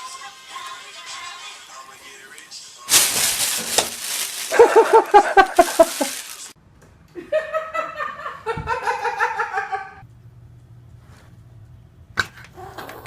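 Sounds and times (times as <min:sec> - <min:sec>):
high-pitched person laughing: 0:04.4 - 0:06.5.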